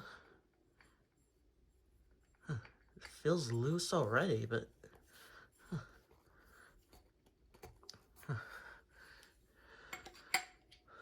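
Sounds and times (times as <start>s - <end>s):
faint breathing: 0.0s - 1.1s, 8.2s - 11.0s.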